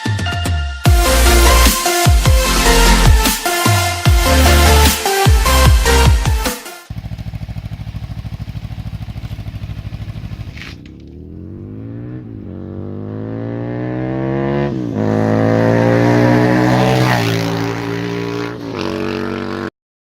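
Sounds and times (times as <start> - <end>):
motorcycle accelerating: 0.9 - 6.2, 6.9 - 19.7
motorcycle engine idling: 6.9 - 12.6.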